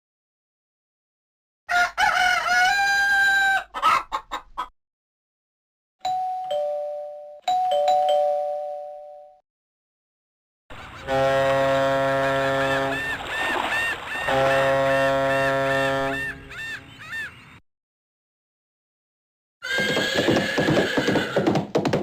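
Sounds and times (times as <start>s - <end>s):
synthesized rooster crow: 1.7s - 4.1s
ding-dong doorbell chime: 6.0s - 9.4s
synth ringtone melody: 6.0s - 9.4s.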